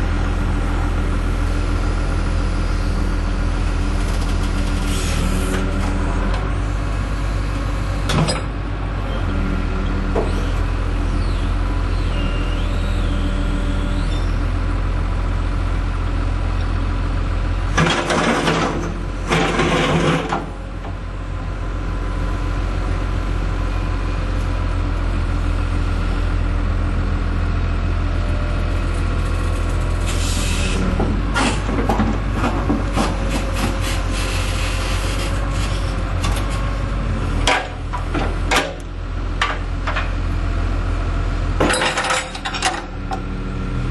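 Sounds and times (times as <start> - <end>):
excavator diesel engine running: 0.0 - 43.9
metallic clanks and knocks: 41.6 - 43.2.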